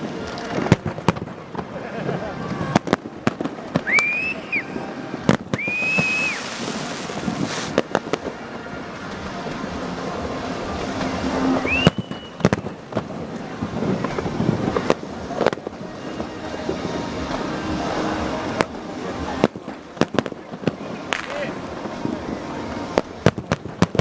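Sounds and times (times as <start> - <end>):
fireworks crackling: 0.0 - 24.0
whistling firework shells: 3.8 - 7.8, 11.5 - 12.9.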